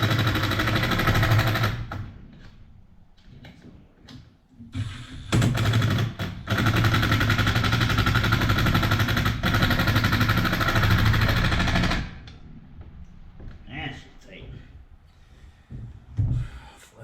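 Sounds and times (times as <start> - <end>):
impact driver hammering: 4.8 - 12.2.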